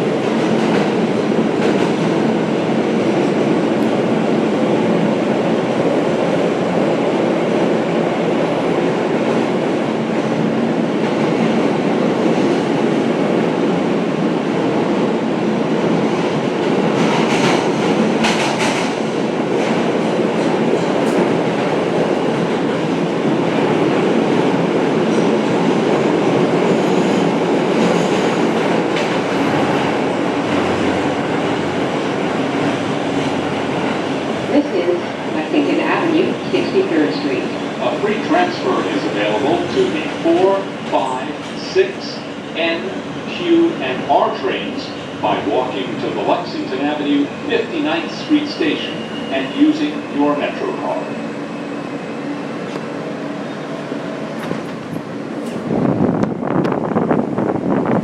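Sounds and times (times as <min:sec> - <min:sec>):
train wheels rumbling on rails: 0:00.0 - 0:58.0
sharp clacks of train wheels: 0:00.2 - 0:02.3, 0:16.1 - 0:21.8, 0:25.0 - 0:34.2.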